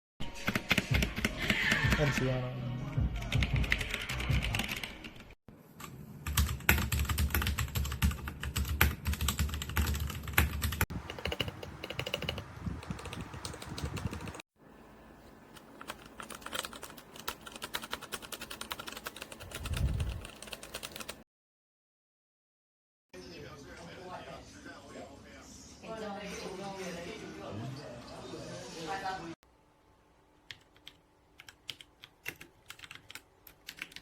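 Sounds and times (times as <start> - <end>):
mechanical keyboard typing: 3.3 - 5.2, 6.2 - 14.4, 15.6 - 21.2, 30.5 - 34.0.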